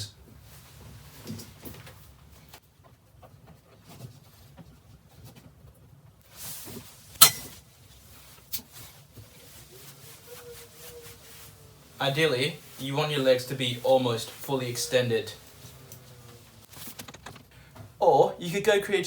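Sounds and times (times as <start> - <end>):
small clicks and rattles: 15.8 - 17.6.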